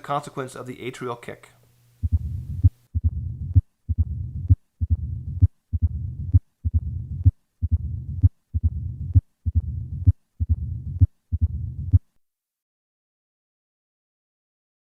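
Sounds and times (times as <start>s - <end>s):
heartbeat with low rumble: 2.0s - 12.0s.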